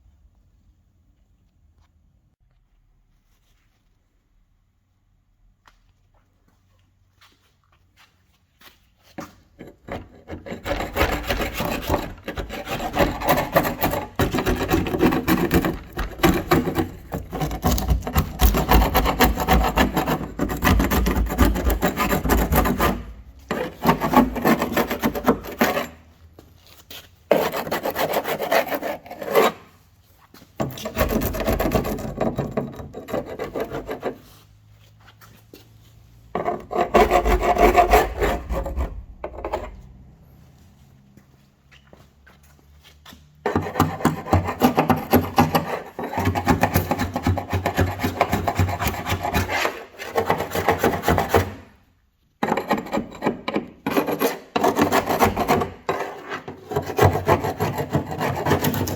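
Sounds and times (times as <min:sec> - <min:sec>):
sanding body filler by hand: 0:10.4 - 0:26.0, 0:27.3 - 0:29.8, 0:43.5 - 0:51.7, 0:52.8 - 0:58.9.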